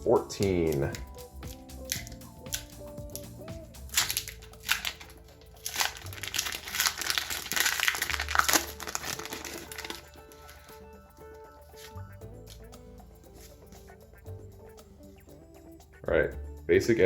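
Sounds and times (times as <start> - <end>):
foil wrapper crinkling: 3.9 - 10.8.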